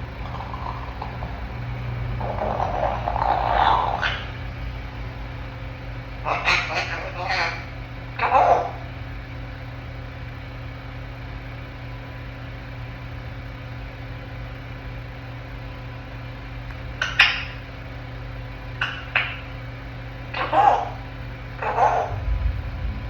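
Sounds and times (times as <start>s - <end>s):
parrot squawk: 2.2s - 4.4s, 6.2s - 9.0s, 17.0s - 17.7s, 18.8s - 19.6s, 20.2s - 22.3s
low hum: 20.3s - 23.0s.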